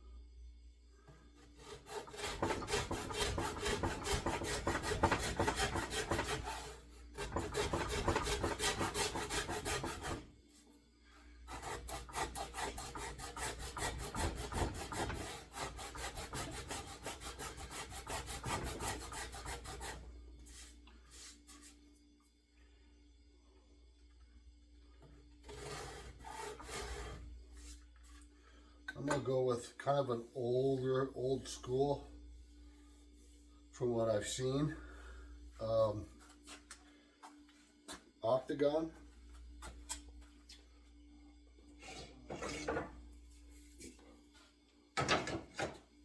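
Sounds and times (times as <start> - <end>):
rasp filing wooden handle: 1.6 - 10.2, 11.5 - 20.0.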